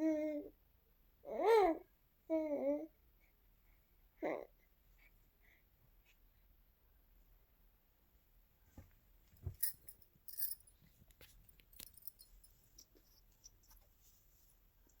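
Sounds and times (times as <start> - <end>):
rustling: 8.7 - 15.0.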